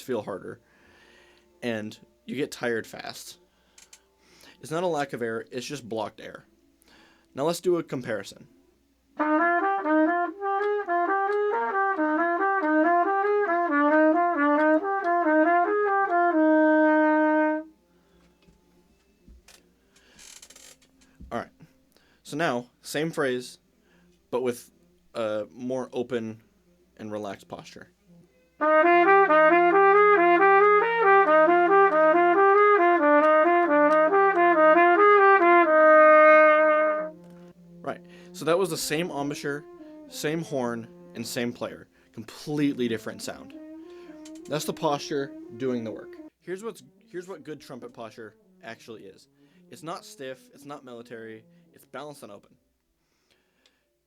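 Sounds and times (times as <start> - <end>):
trumpet playing: 9.2 - 17.8, 28.6 - 52.0.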